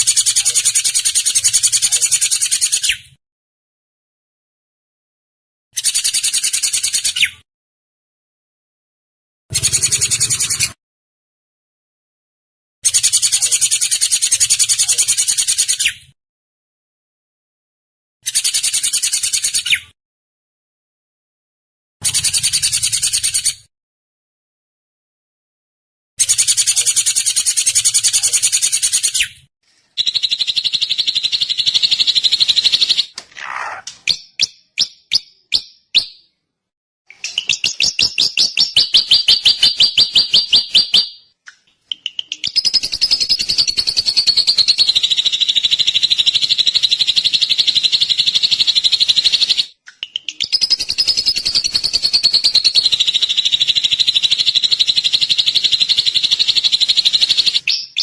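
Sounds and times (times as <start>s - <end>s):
bird song with rapid trills: 9.5s - 10.8s, 22.0s - 23.7s, 26.2s - 36.3s, 37.1s - 58.0s.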